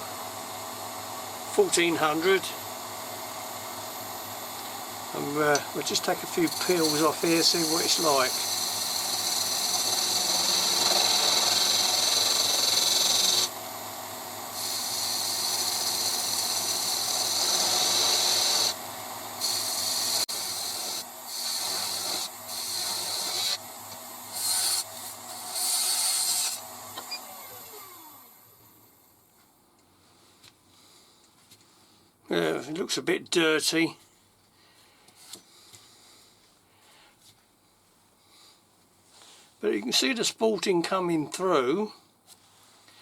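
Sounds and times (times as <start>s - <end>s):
lathe motor humming: 0.0s - 28.4s
chisel cutting wood on lathe: 0.3s - 28.2s.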